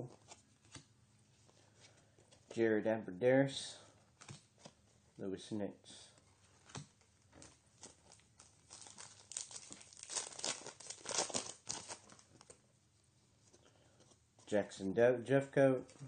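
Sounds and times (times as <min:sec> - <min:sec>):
wrapper crinkling and tearing: 0:07.4 - 0:12.6.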